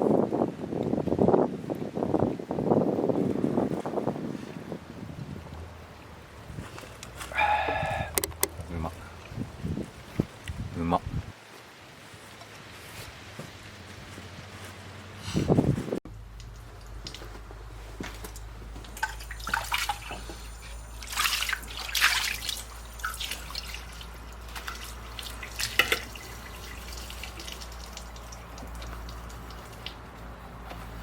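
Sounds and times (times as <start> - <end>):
water dripping and splashing: 16.1 - 31.0.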